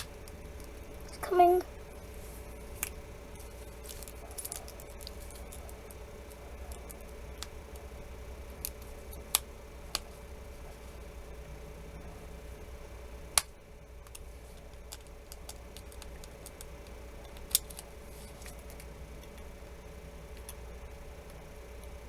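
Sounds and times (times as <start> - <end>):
sharp snaps: 0.0 - 0.8
faint steady hum: 0.0 - 22.0.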